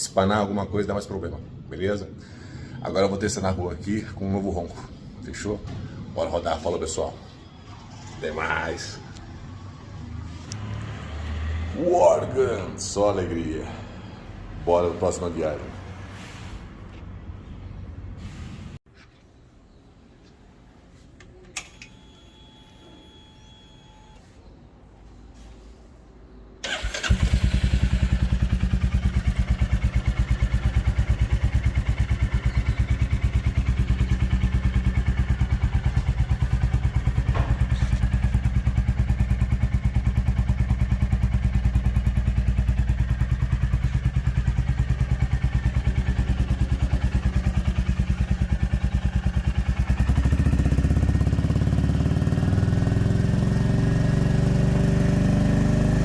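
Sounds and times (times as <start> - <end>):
motorcycle engine idling: 26.7 - 55.0.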